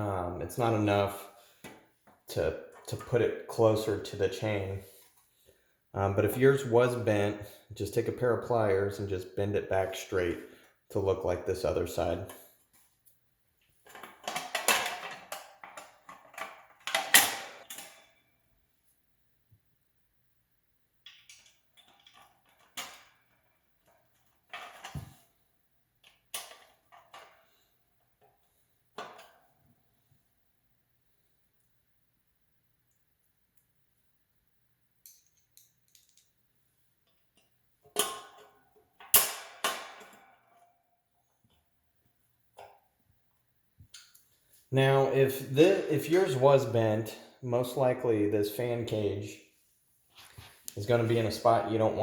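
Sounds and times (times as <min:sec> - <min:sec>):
sharp metal clanks: 0:39.1 - 0:40.2.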